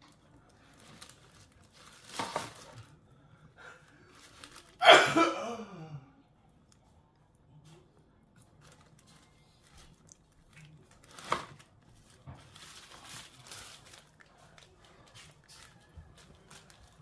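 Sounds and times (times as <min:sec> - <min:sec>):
man sneezing: 0:04.8 - 0:05.9.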